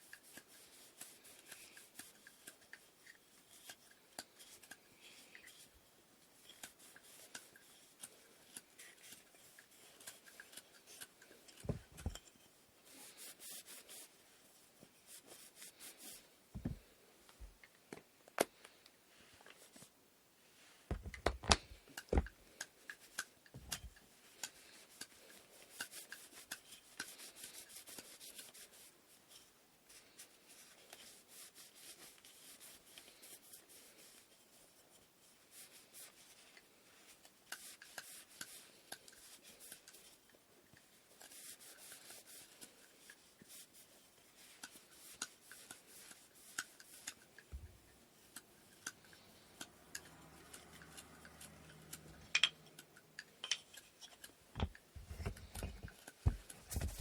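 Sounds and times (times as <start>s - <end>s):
scratchy rubbing strokes: 12.8s - 16.4s
wood knocking on wood: 16.6s - 16.8s, 20.9s - 22.3s.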